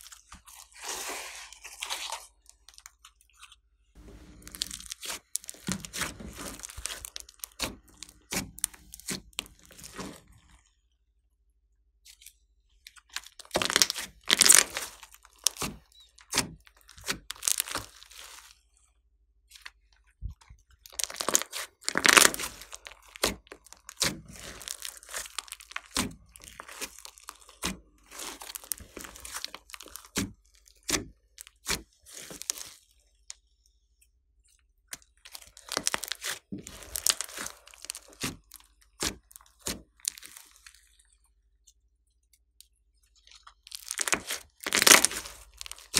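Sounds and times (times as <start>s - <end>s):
slime crackling and popping: 4.2s - 10.2s, 13.0s - 18.6s, 20.8s - 32.8s, 34.9s - 40.8s, 43.4s - 45.9s.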